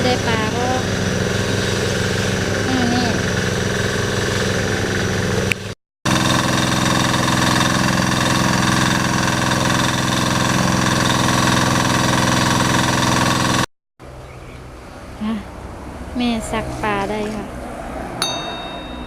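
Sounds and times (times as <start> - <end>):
small engine driving water pump: 0.0 - 13.7.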